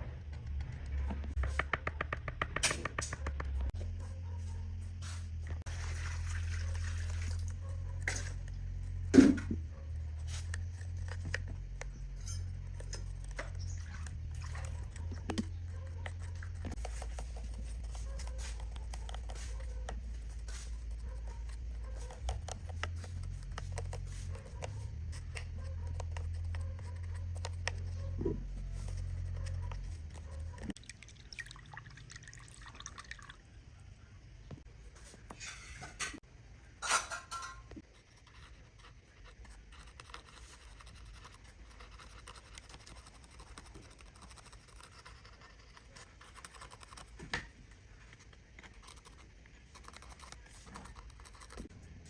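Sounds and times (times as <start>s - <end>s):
small liquid sounds: 5.7s - 8.2s, 30.7s - 33.6s.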